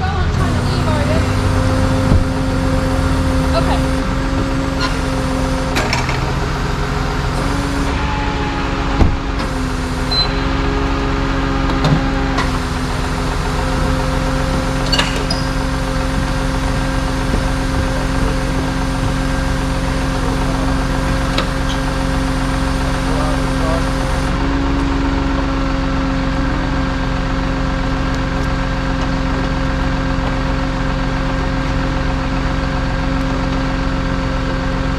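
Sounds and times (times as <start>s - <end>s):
vehicle engine idling: 0.0s - 34.9s
knocks and clunks: 0.3s - 8.2s, 8.8s - 10.3s, 11.7s - 22.1s.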